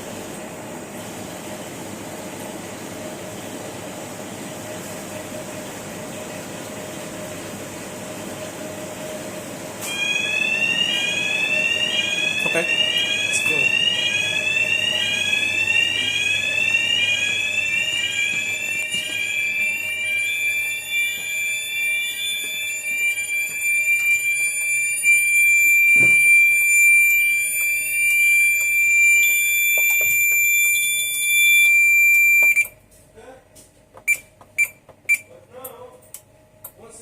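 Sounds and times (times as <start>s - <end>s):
steady high-pitched alarm tone: 9.8s - 32.7s
fire alarm rising sweep tone: 9.8s - 32.8s
thump: 26.0s - 26.2s.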